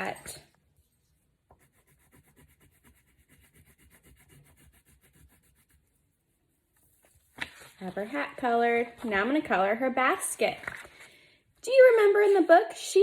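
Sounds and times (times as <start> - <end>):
crayon scribbling on paper: 1.5 - 6.0.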